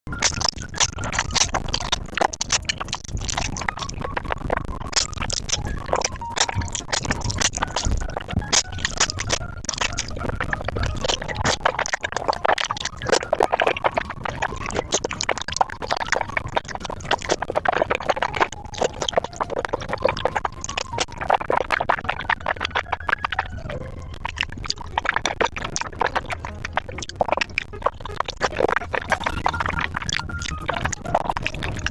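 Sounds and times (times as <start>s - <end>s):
wet chewing and slurping noodles: 0.1s - 31.9s.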